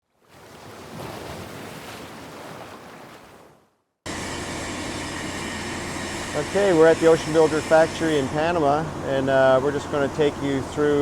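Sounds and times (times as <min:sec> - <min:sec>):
ocean waves washing: 0:00.2 - 0:11.0.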